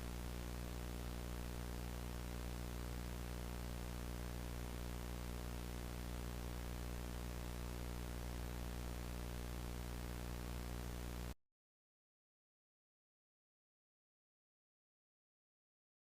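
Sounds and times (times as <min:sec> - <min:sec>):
low electrical hum: 0:00.0 - 0:11.4.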